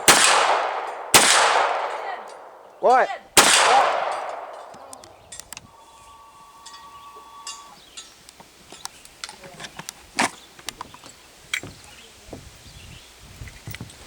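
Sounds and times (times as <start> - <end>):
gun clicks and rattles: 4.0 - 5.6.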